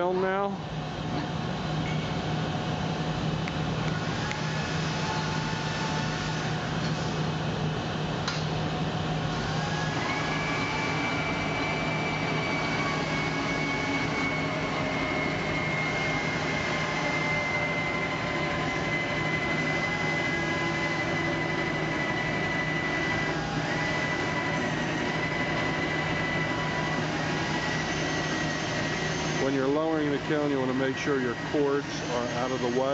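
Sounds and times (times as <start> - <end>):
winch motor humming: 0.0 - 32.9
high whine: 9.3 - 32.9.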